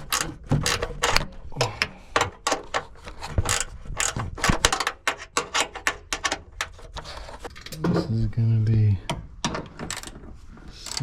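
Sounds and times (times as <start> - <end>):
ratchet wrench clicking: 0.0 - 1.2, 3.5 - 5.7, 9.9 - 10.2, 10.8 - 11.0.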